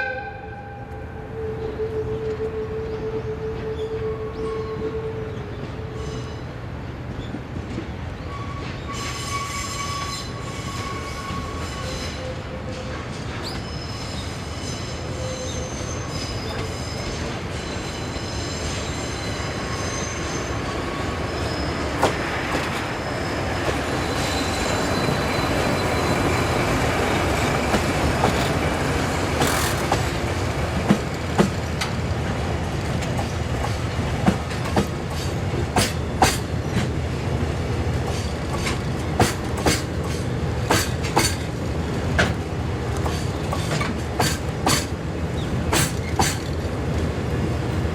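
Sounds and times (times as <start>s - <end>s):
train rumble: 0.0s - 47.9s
train wheel squeal: 1.3s - 30.2s, 33.2s - 36.8s, 38.1s - 41.5s, 43.0s - 46.7s
wheels clacking over rail joints: 21.8s - 37.0s, 37.9s - 47.1s.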